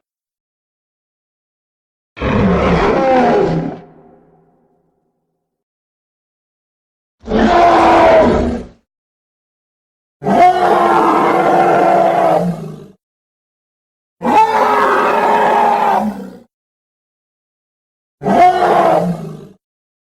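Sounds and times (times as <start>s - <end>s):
pitched dinosaur calls: 14.2s - 16.3s.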